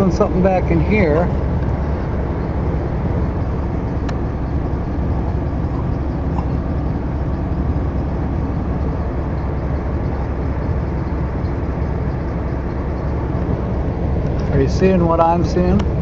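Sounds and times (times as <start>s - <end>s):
vehicle engine and road noise: 0.0s - 16.0s.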